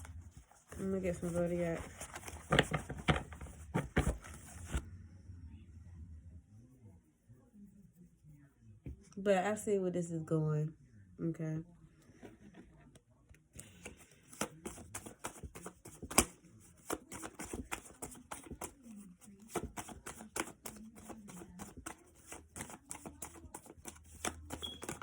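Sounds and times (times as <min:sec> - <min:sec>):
cards being shuffled: 0:00.0 - 0:04.8, 0:13.7 - 0:18.8, 0:19.4 - 0:25.0.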